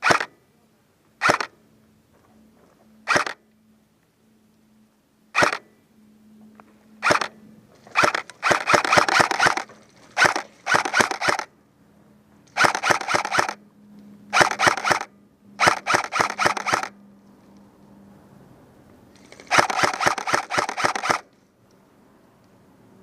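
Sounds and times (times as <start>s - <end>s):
airsoft gun firing bursts: 0.0s - 0.3s, 1.2s - 1.5s, 3.1s - 3.4s, 5.4s - 5.6s, 7.0s - 7.3s, 7.9s - 11.5s, 12.5s - 13.6s, 14.3s - 17.0s, 19.4s - 21.3s.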